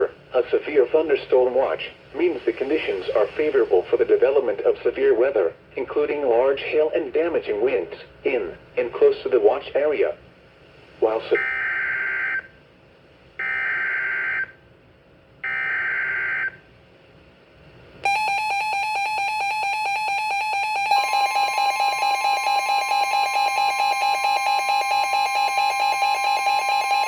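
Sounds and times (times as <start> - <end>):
higher alert tone: 18.1 - 27.0.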